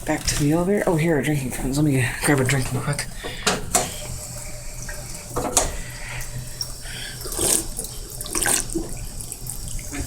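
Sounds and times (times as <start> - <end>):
steady low hum: 0.0 - 8.3
water splashing into basin: 4.8 - 10.0.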